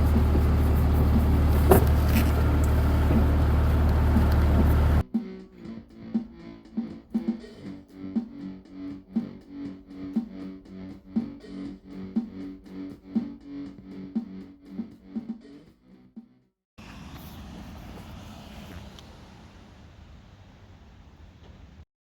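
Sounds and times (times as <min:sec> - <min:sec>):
vehicle engine rumble: 0:00.0 - 0:05.0, 0:16.8 - 0:21.8.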